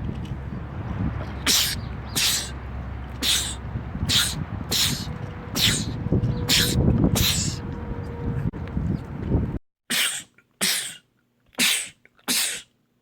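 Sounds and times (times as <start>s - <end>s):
steady low rumble: 0.0s - 9.6s
man sneezing: 9.9s - 11.0s, 11.6s - 12.7s.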